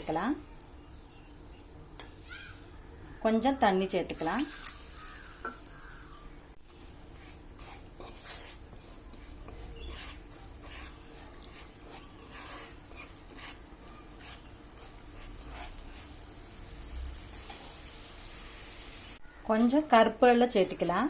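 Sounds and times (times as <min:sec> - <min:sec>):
spoon scraping and stirring: 0:04.1 - 0:06.0, 0:06.7 - 0:18.1, 0:20.4 - 0:21.0.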